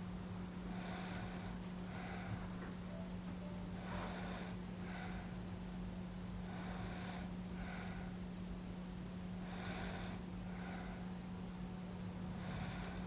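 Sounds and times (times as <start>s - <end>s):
person breathing while sleeping: 0.6s - 2.6s, 3.8s - 5.5s, 6.4s - 8.2s, 9.3s - 11.2s, 12.3s - 13.0s.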